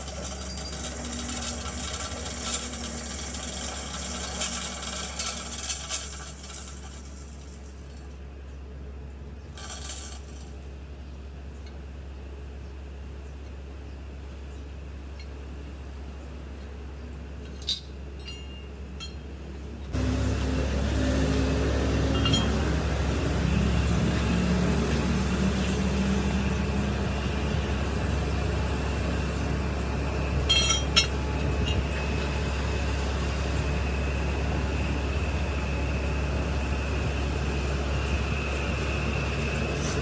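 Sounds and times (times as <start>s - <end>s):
workshop machine humming: 0.0s - 7.8s, 19.8s - 40.0s.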